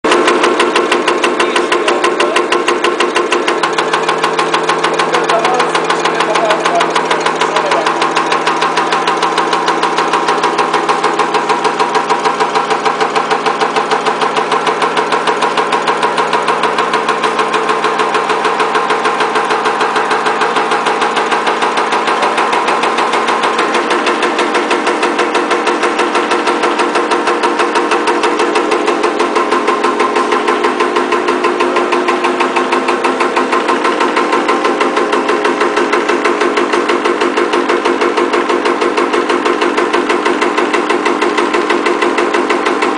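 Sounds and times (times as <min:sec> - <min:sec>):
steady machine hum: 0:00.0 - 0:42.9
power press punching strokes: 0:00.1 - 0:42.9.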